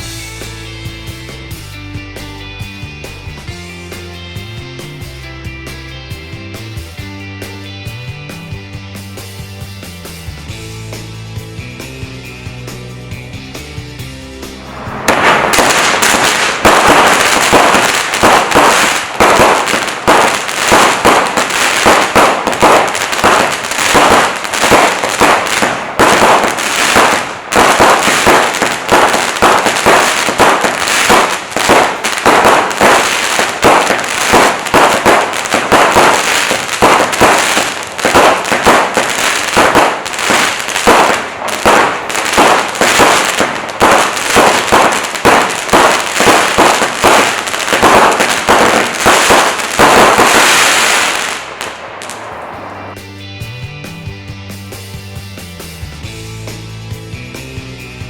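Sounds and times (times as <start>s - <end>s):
fireworks crackling: 0.0s - 0.5s, 14.4s - 53.0s
fireworks shots bursting: 14.5s - 53.0s.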